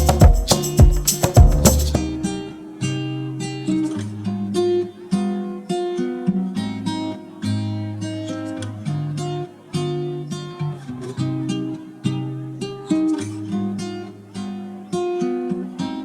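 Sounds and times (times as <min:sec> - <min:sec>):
strummed string chords: 0:00.0 - 0:02.6.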